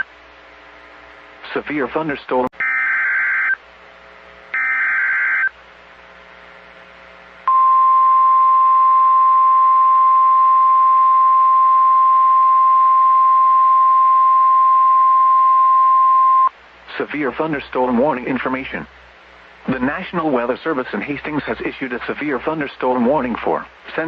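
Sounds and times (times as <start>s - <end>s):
steady warning alarm tone: 2.6s - 3.6s, 4.6s - 5.5s.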